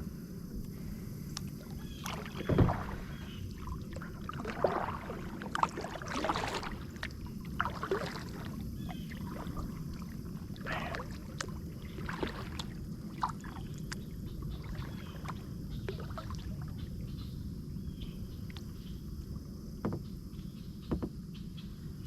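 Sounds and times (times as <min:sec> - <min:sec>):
water and wind rumbling: 0:00.0 - 0:22.0
small water splashes: 0:01.4 - 0:17.2
light knocks on kayak: 0:02.0 - 0:03.4, 0:19.8 - 0:20.1, 0:20.8 - 0:21.2.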